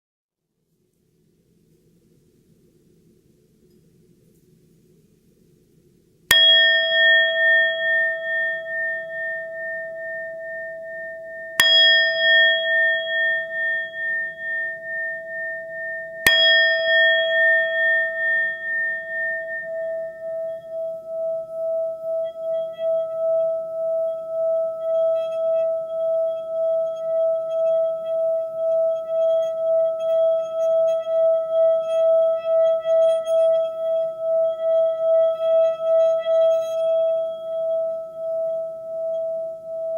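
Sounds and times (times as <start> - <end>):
singing bowl ringing: 6.3 - 39.9.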